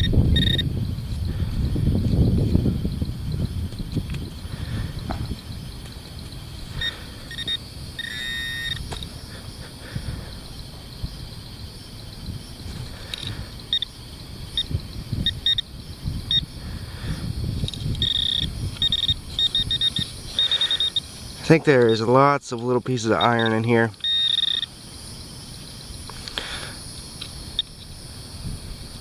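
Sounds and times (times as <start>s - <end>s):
metal detector beeps: 0.0s - 0.7s, 6.8s - 9.1s, 13.7s - 13.9s, 14.5s - 15.7s, 16.3s - 16.5s, 17.8s - 21.1s, 23.1s - 24.7s.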